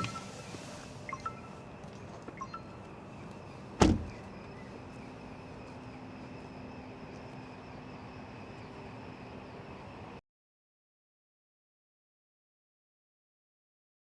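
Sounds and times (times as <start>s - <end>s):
car door shutting: 0.0s - 1.4s, 3.8s - 4.4s
steady low hum: 0.0s - 10.2s
electronic chime beeps: 1.1s - 1.6s, 2.4s - 2.8s.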